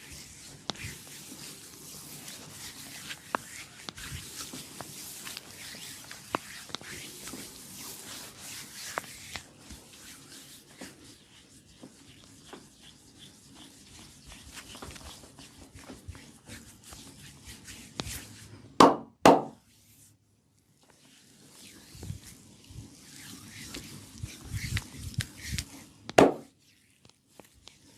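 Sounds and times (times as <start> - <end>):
massage strokes rubbing skin: 0.0 - 18.6, 19.6 - 27.9.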